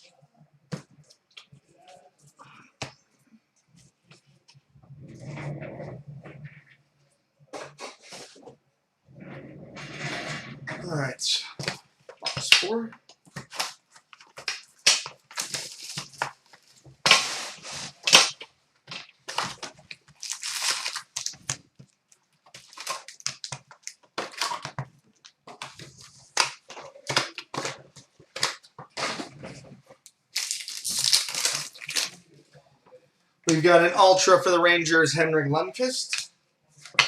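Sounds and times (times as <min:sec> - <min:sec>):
plastic wrapping tearing and crinkling: 0:13.4 - 0:32.3.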